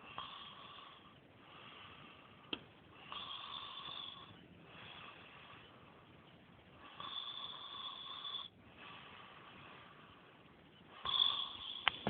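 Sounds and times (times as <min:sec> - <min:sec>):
person snoring: 0:03.0 - 0:04.3, 0:06.8 - 0:09.0, 0:11.0 - 0:11.8.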